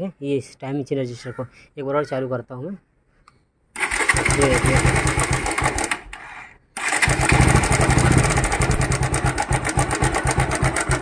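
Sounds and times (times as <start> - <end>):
motorcycle engine clattering: 3.8 - 6.2, 6.8 - 11.0.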